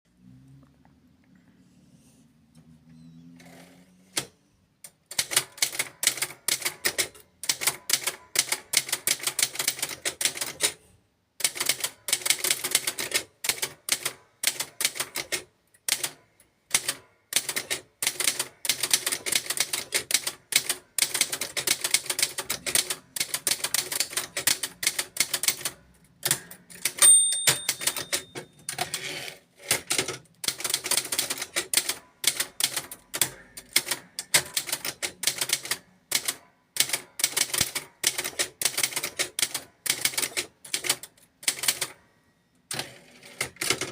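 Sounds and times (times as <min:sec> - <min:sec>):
typewriter key strikes: 0:26.2 - 0:28.8
typewriter margin bell ding: 0:26.9 - 0:28.9.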